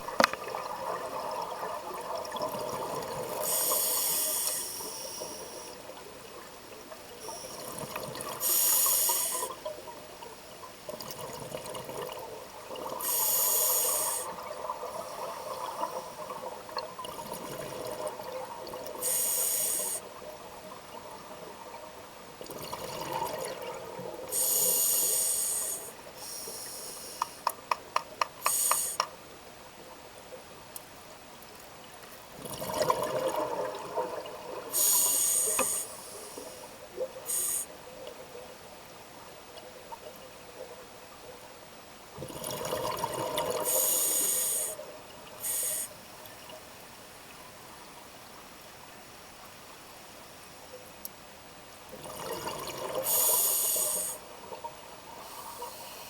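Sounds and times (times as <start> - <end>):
bursts of hissing: 13.0 - 14.3, 28.4 - 29.0, 34.8 - 36.7, 37.3 - 37.7, 45.4 - 46.0, 53.1 - 54.2.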